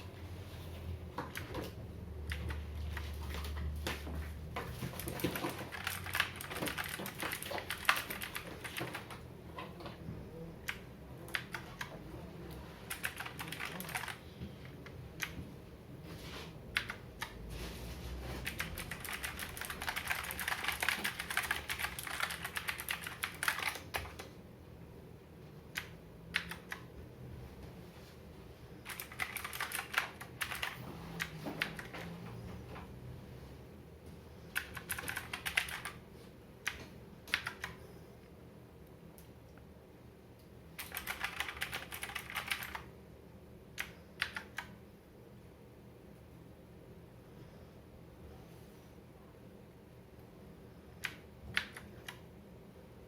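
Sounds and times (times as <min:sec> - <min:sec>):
mechanical keyboard typing: 0:01.2 - 0:03.6, 0:04.5 - 0:09.8, 0:10.6 - 0:12.0, 0:12.8 - 0:14.2, 0:16.7 - 0:17.4, 0:18.4 - 0:24.4, 0:25.7 - 0:26.9, 0:28.8 - 0:32.2, 0:34.5 - 0:36.0, 0:36.6 - 0:37.8, 0:40.8 - 0:42.9, 0:43.7 - 0:44.8, 0:51.0 - 0:52.3.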